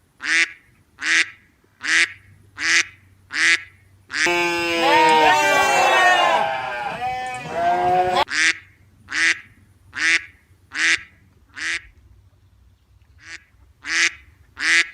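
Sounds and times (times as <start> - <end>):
ducks quacking: 0.2 - 9.4.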